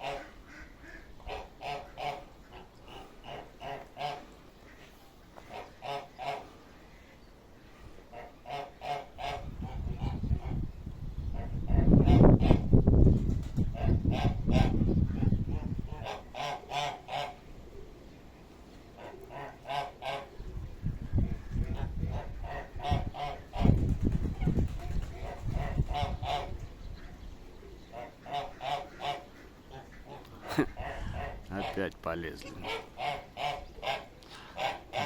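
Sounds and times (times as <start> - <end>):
bird honking: 0.0 - 7.1, 28.0 - 31.8, 32.5 - 35.0
wind buffeting microphone: 9.2 - 16.2, 20.4 - 27.4, 30.6 - 31.6.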